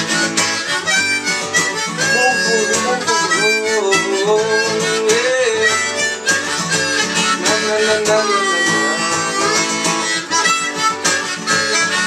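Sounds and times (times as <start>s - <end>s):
harmonica melody: 0.0s - 12.0s
strummed acoustic guitar: 0.0s - 12.0s.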